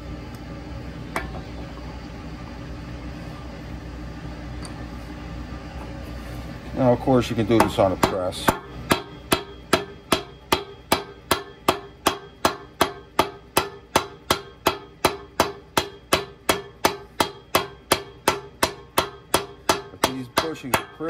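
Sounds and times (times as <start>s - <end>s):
hammer tapping metal: 7.5s - 21.0s.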